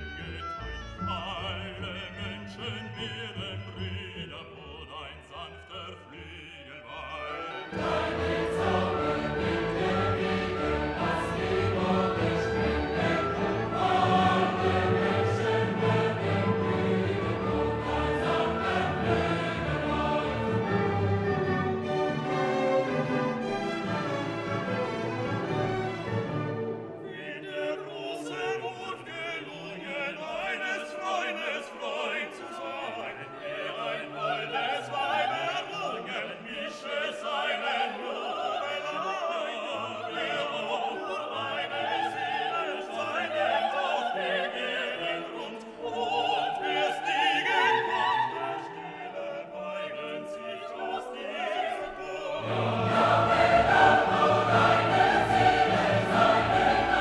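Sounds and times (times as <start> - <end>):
classical choral music: 0.0 - 57.0.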